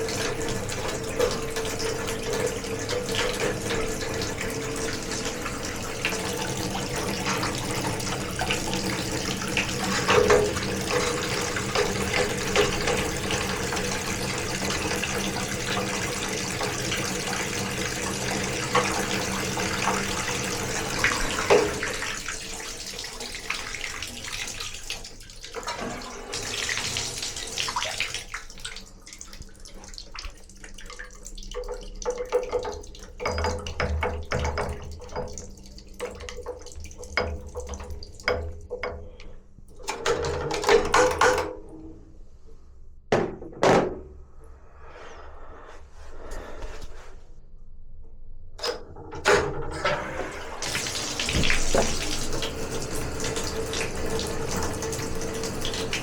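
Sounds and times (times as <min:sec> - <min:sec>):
water running from a tap: 0:00.0 - 0:39.2, 0:49.8 - 0:56.0
clicks and knocks: 0:37.1 - 0:41.9.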